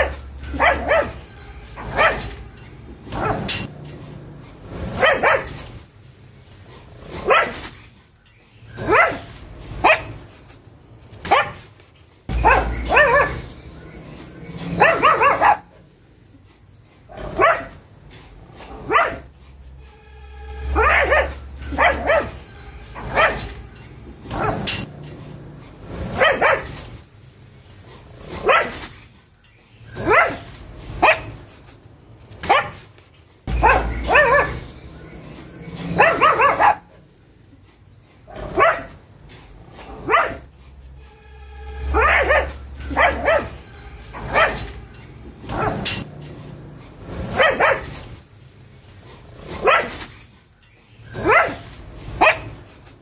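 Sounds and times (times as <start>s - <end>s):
dog barking: 0.0s - 3.7s, 4.8s - 5.7s, 7.1s - 7.7s, 8.8s - 10.2s, 11.2s - 11.6s, 12.3s - 15.8s, 17.1s - 17.8s, 18.6s - 19.3s, 20.6s - 22.4s, 23.0s - 23.6s, 24.3s - 24.9s, 26.0s - 26.8s, 28.4s - 28.8s, 29.9s - 31.4s, 32.4s - 32.8s, 33.5s - 37.0s, 38.3s - 39.0s, 39.8s - 40.5s, 41.9s - 44.8s, 45.4s - 46.1s, 47.2s - 48.0s, 49.6s - 50.0s, 51.1s - 52.6s.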